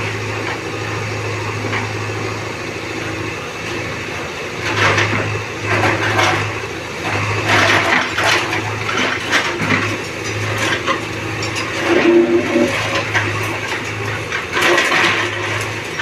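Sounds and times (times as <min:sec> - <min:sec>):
diesel engine running: 0:00.0 - 0:16.0
two-note tone: 0:11.8 - 0:12.7.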